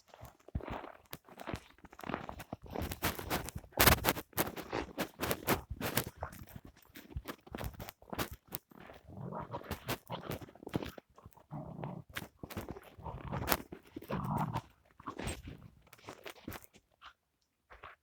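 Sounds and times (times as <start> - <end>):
footsteps crunching through snow: 1.8 - 6.1.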